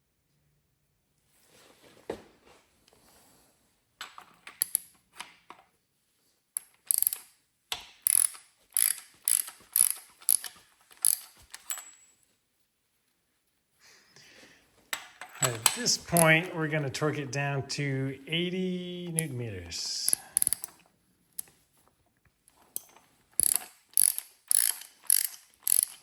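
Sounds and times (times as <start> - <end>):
ratchet wrench clicking: 6.6 - 11.7, 20.1 - 20.8, 22.8 - 26.0.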